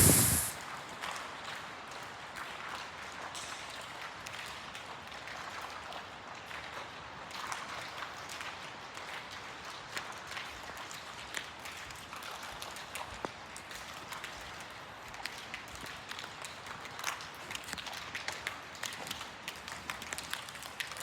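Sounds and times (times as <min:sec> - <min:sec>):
faint steady hiss: 0:00.0 - 0:00.6
rainwater dripping from roof: 0:07.8 - 0:21.0.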